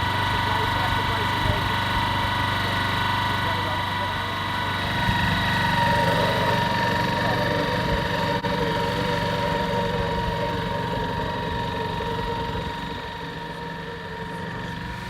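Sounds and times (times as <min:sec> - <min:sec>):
small petrol engine running: 0:00.0 - 0:15.0.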